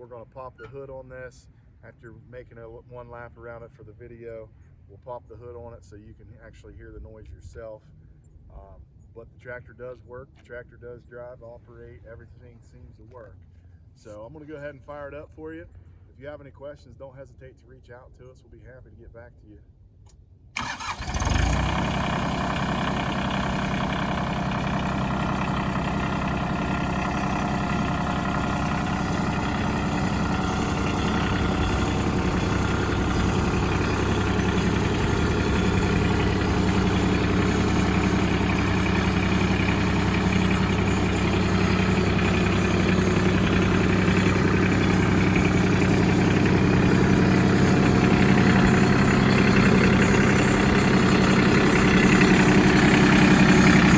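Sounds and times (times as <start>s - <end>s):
diesel tractor engine idling: 20.6s - 53.9s.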